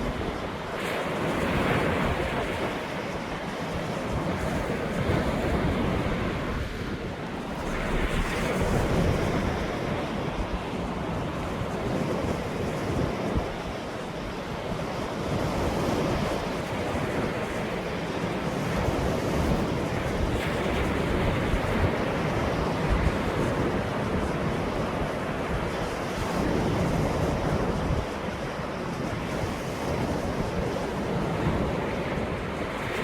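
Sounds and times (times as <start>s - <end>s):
ocean waves surf: 0.0s - 33.0s
wind rumble on microphone: 0.0s - 33.0s.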